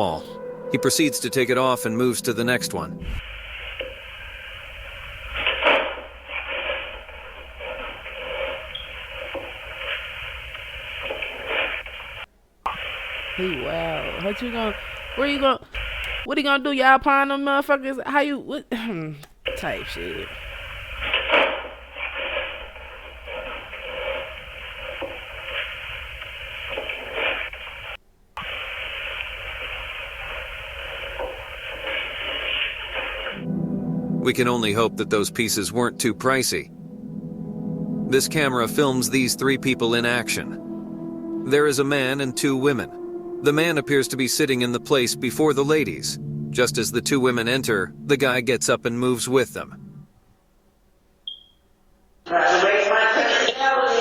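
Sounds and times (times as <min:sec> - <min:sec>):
microphone hiss and hum: 0:00.0 - 0:54.0
rubbing and knocking handling noise: 0:03.2 - 0:13.3, 0:20.2 - 0:33.4.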